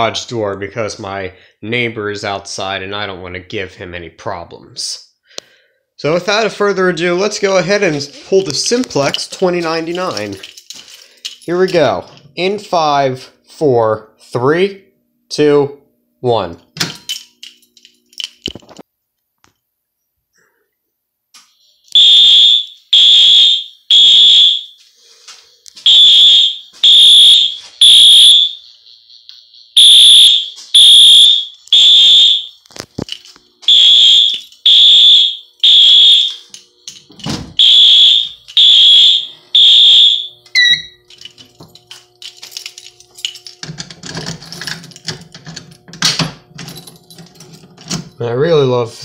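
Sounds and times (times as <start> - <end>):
handling noises: 7.8 - 12.4, 32.5 - 34.7, 40.4 - 48.2
fire alarm horn blasts: 21.6 - 24.8, 25.8 - 32.7, 33.7 - 36.6, 37.6 - 41.1.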